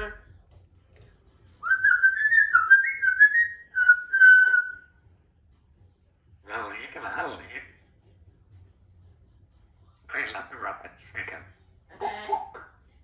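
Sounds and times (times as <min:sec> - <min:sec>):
parrot whistling a tune: 0:01.6 - 0:04.9.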